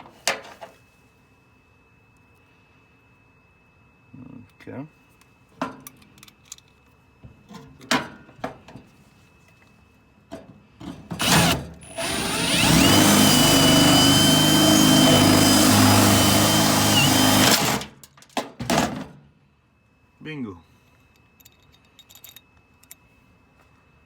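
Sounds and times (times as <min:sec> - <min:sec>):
clicks and knocks of handling parts: 0:05.2 - 0:06.9, 0:21.1 - 0:23.1
power drill drilling metal: 0:11.2 - 0:17.9.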